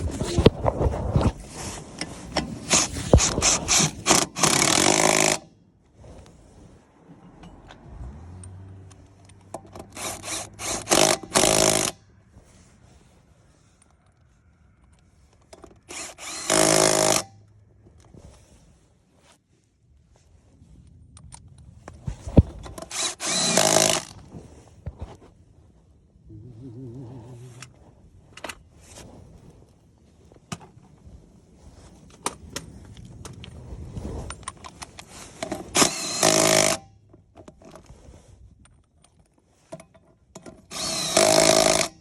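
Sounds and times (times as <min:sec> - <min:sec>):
impact wrench running: 0:02.7 - 0:05.5, 0:09.7 - 0:12.0, 0:15.9 - 0:17.3, 0:22.8 - 0:24.2, 0:35.7 - 0:36.8, 0:40.7 - 0:42.0.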